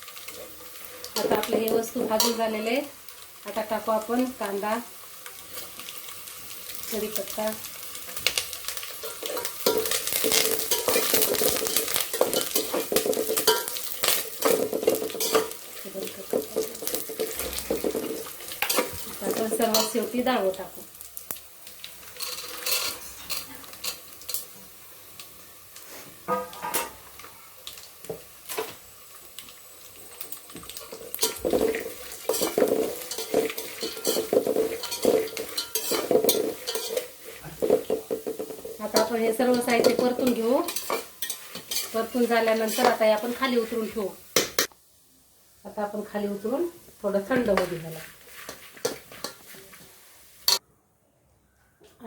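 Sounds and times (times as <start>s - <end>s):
leaves sizzling in hot oil: 0.0s - 50.6s
spoon scraping pan: 0.2s - 2.5s, 8.1s - 20.3s, 30.6s - 43.5s, 47.3s - 50.6s
spoon clinking against pan: 12.1s - 13.8s, 32.3s - 37.0s.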